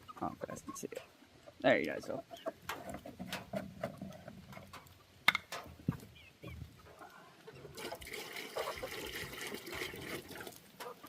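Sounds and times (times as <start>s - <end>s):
water pouring into a bowl: 7.8s - 10.6s.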